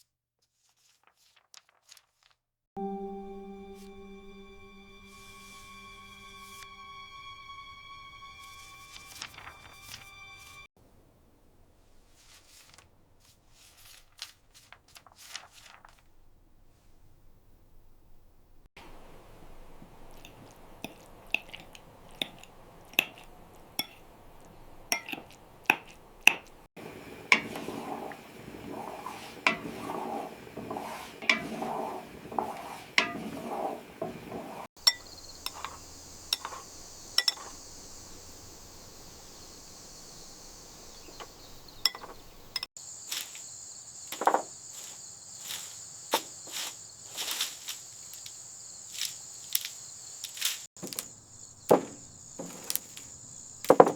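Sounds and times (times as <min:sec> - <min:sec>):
dishes and utensils clinking: 0:18.8 - 0:37.6, 0:41.2 - 0:42.7
crickets chirring: 0:26.8 - 0:53.9.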